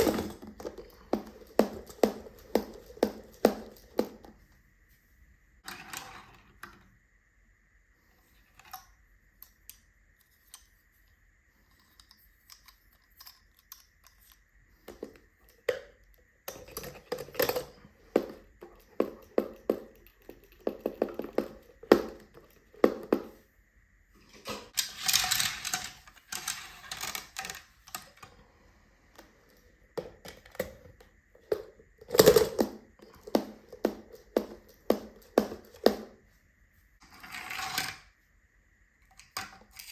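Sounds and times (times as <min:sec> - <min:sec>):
toy cars clicking and clattering: 0:11.7 - 0:17.8, 0:24.7 - 0:28.3.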